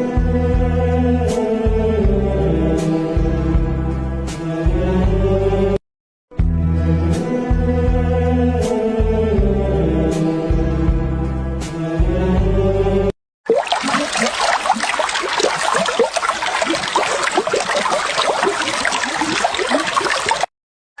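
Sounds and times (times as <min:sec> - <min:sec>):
stream trickling and babbling: 0:13.4 - 0:20.5.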